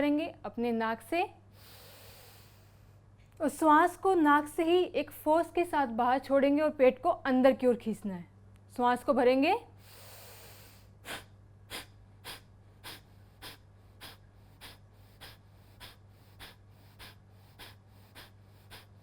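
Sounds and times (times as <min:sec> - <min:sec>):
breath in through nose: 0:01.5 - 0:03.0, 0:09.8 - 0:19.0
forceful nasal exhalations: 0:01.5 - 0:03.0, 0:09.8 - 0:19.0.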